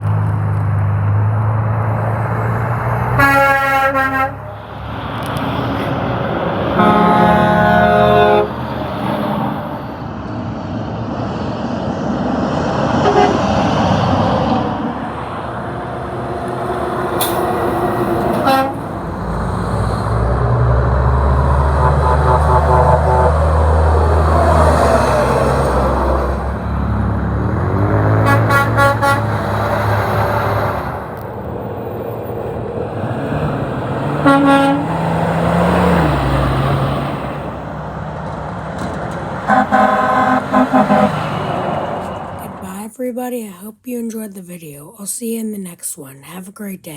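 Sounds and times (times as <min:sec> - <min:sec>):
heavy truck engine rumble: 0:00.0 - 0:42.7
road traffic: 0:00.0 - 0:42.9
truck air horn toot: 0:03.1 - 0:04.8, 0:06.6 - 0:09.8, 0:13.0 - 0:13.6, 0:17.1 - 0:19.2, 0:21.3 - 0:26.4, 0:28.2 - 0:31.0, 0:34.2 - 0:35.4, 0:39.4 - 0:42.5.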